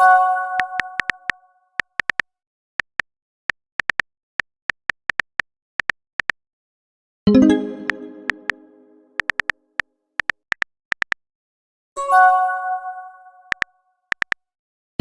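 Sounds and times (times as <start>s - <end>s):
phone keyboard typing blips: 0.6s - 2.2s, 2.8s - 3.1s, 3.8s - 4.1s, 4.7s - 6.4s, 7.6s - 9.6s, 10.2s - 11.2s, 13.5s - 14.4s
chime tone: 7.3s - 9.1s.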